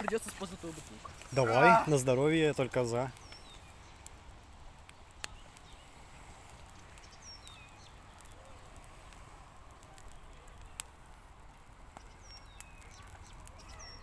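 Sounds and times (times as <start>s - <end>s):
bonfire cracking: 0.0s - 14.0s
small bird chirping: 3.1s - 4.2s, 4.8s - 8.5s, 11.9s - 14.0s.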